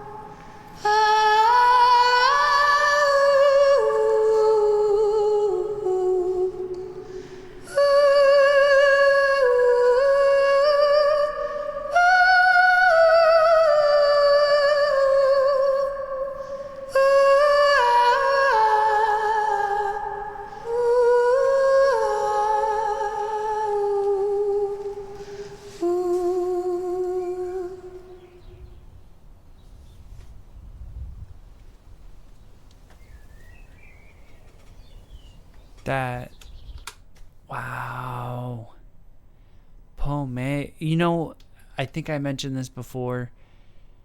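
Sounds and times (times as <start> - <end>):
woman humming a slow melody: 0.0 - 28.9.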